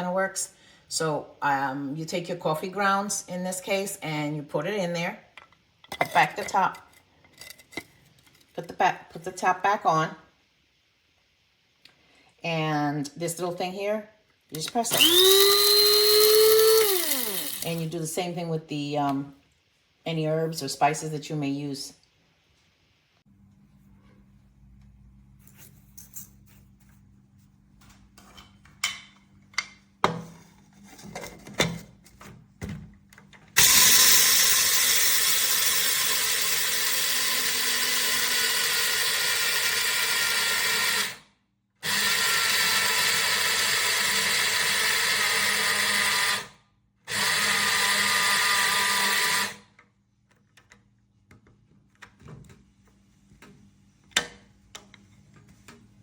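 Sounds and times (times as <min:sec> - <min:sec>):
electric coffee grinder running: 0:14.9 - 0:17.9, 0:33.6 - 0:41.2, 0:41.8 - 0:46.5, 0:47.1 - 0:49.6.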